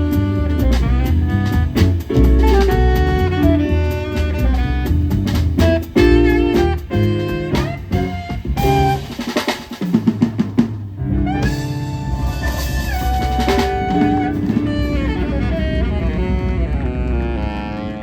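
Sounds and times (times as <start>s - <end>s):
drum fill on snare and cymbal: 0.0s - 17.2s
jazz band playing: 0.0s - 18.0s.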